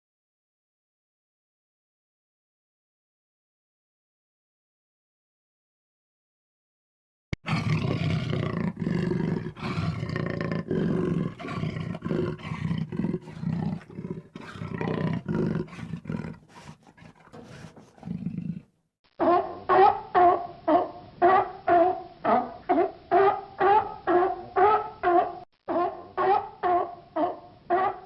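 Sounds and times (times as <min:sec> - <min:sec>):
large animal roaring: 0:07.4 - 0:18.7.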